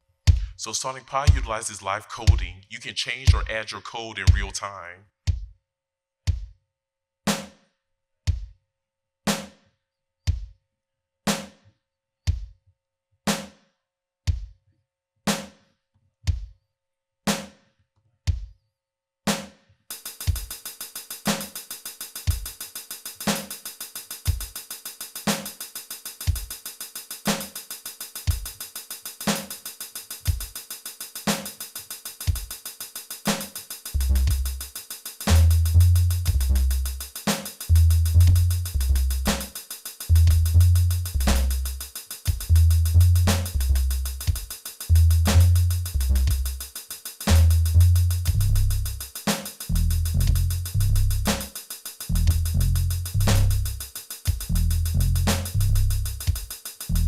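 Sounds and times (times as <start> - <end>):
drum machine kick and snare: 0.1 - 1.6, 2.2 - 2.6, 3.3 - 3.6, 4.2 - 5.6, 6.2 - 6.6, 7.3 - 7.7, 8.3 - 8.6, 9.3 - 9.6, 10.3 - 10.6, 11.3 - 11.6, 12.3 - 12.6, 13.3 - 13.6, 14.3 - 14.6, 15.3 - 15.6, 16.3 - 16.6, 17.3 - 17.6, 18.3 - 18.6, 19.3 - 57.0
ticking hi-hat: 0.2 - 2.6, 19.9 - 57.0
deep bass line: 34.0 - 34.6, 35.3 - 37.0, 37.7 - 39.5, 40.1 - 41.8, 42.5 - 44.3, 44.9 - 46.6, 47.3 - 49.0, 49.7 - 51.4, 52.1 - 53.8, 54.5 - 56.2.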